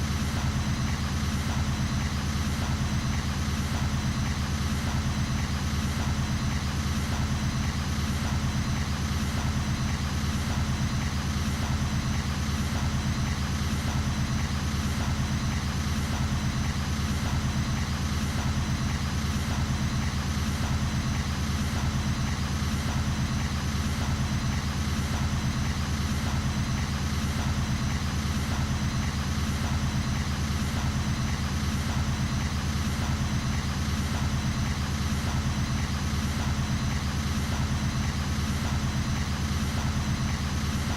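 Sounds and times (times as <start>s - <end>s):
engine idling: 0.0s - 40.9s.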